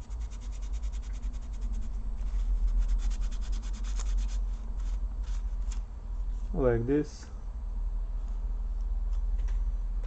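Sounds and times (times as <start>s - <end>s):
cotton swab rubbing metal: 0.0s - 5.7s.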